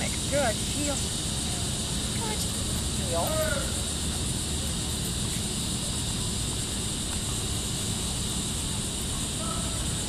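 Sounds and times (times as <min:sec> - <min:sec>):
constant high hiss: 0:00.0 - 0:10.0.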